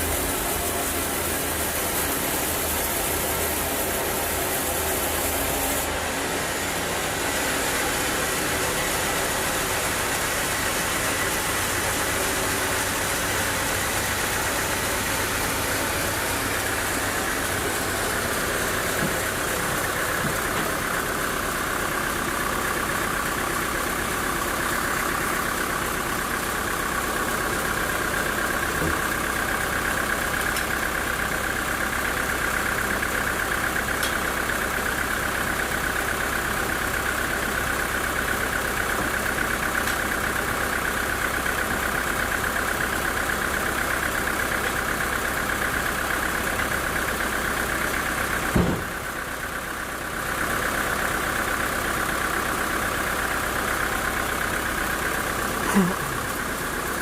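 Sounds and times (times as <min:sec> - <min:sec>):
sawmill machinery whining: 0:00.0 - 0:57.0.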